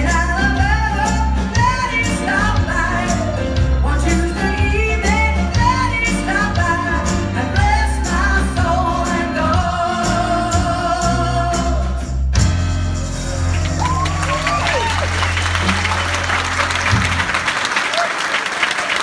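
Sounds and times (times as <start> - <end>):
singers with live band: 0.0 - 12.3.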